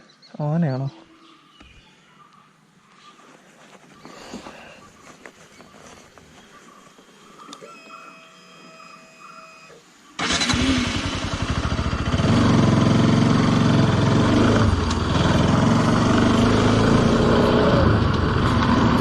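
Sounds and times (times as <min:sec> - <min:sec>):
motorcycle engine starting and running: 0:10.2 - 0:19.0.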